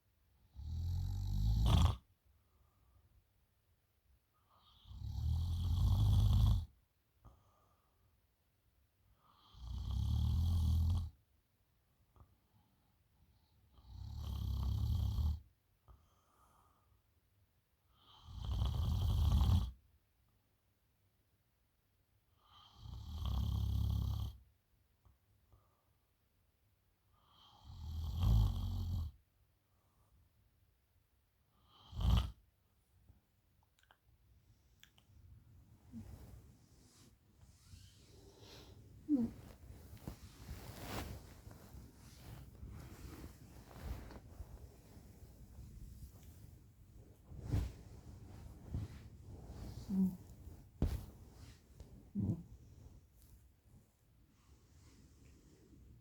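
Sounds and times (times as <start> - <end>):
quiet breathing: 7.2 - 8.2, 15.9 - 17.1, 34.5 - 56.0
woman snoring: 37.7 - 41.1, 49.7 - 51.0, 52.1 - 52.5.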